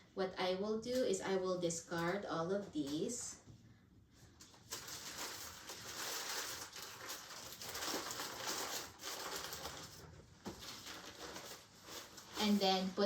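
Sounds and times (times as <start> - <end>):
plastic and paper packaging rustling: 4.2 - 13.0.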